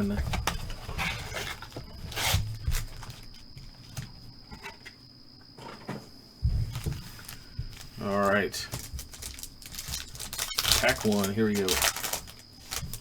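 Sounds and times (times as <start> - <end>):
wrapping rustling: 6.7 - 13.0
faint high whine: 9.8 - 12.9.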